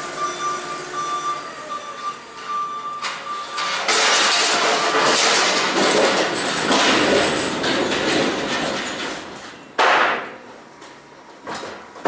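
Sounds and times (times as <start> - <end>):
pallet jack wheels rattling: 3.1 - 9.8
loud metal clank: 3.6 - 10.4.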